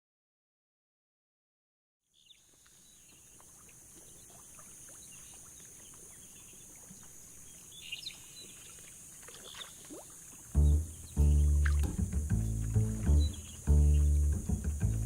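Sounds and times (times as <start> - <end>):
steady outdoor hiss: 2.0 - 15.0
bird chirps: 4.0 - 9.8, 10.6 - 14.4.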